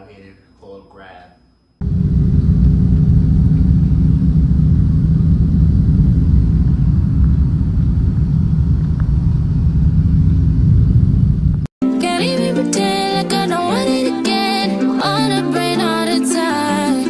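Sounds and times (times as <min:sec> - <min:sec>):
car rumbling on the move: 0:01.8 - 0:11.7.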